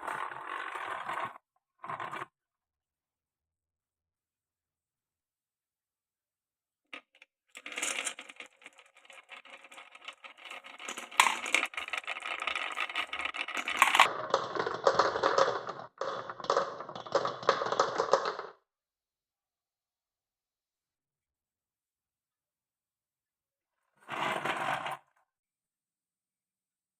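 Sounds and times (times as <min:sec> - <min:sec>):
marbles rolling on wooden track: 0:00.0 - 0:02.3, 0:07.0 - 0:18.6, 0:24.1 - 0:25.1
sharp marble clicks: 0:07.6 - 0:18.6.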